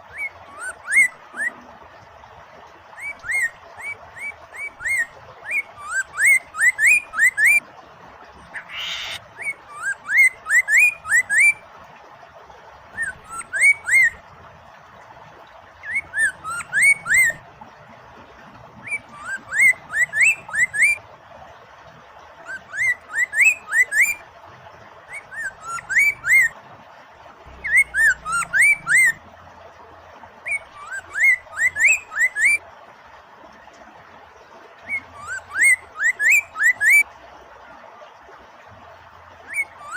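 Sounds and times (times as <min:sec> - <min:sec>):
running water rushing: 0:00.0 - 0:39.9
bird singing whistled notes: 0:03.0 - 0:07.6, 0:08.5 - 0:11.6, 0:13.0 - 0:14.2, 0:15.8 - 0:17.4, 0:18.9 - 0:21.0, 0:22.5 - 0:24.2, 0:25.1 - 0:26.5, 0:27.6 - 0:29.2, 0:30.5 - 0:32.6, 0:34.9 - 0:37.0.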